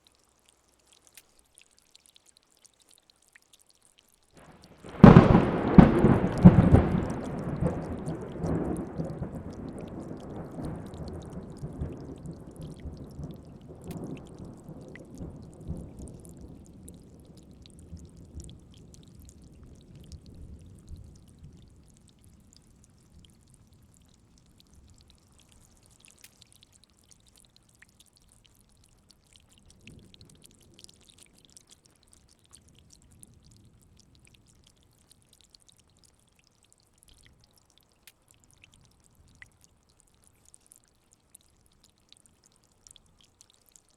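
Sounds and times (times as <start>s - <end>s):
steady rain: 0.0s - 43.9s
thunder rumble: 4.4s - 17.1s.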